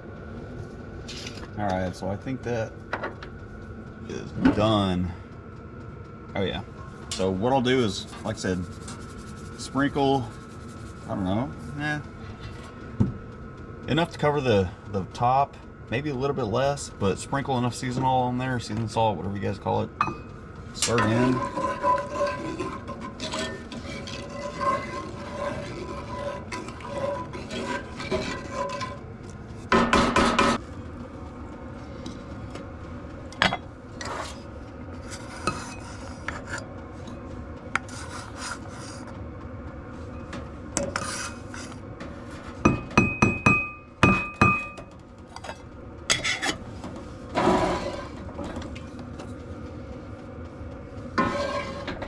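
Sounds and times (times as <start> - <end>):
metal spoon scraping a pot: 20.8 - 29.1, 34.0 - 36.7, 40.8 - 41.8, 46.1 - 46.6, 47.4 - 48.2, 51.2 - 52.0.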